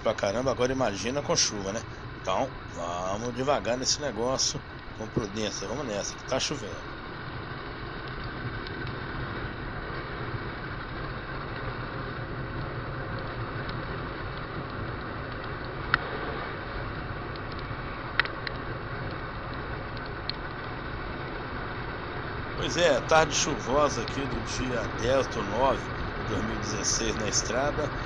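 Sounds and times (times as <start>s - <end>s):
wet road noise: 0.0s - 28.0s
motorcycle engine running: 4.6s - 28.0s
sharp clicks: 17.3s - 19.2s.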